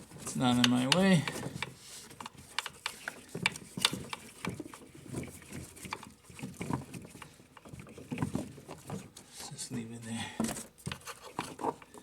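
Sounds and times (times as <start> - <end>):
clicks and taps of tools: 0.5 - 4.6.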